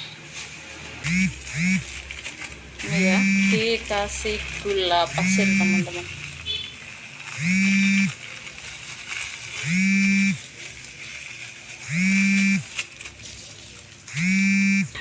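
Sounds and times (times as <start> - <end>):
loud low buzzing tone: 1.0 - 2.1, 2.8 - 3.9, 5.1 - 6.6, 7.4 - 8.2, 9.6 - 10.4, 11.8 - 12.7, 14.1 - 15.0.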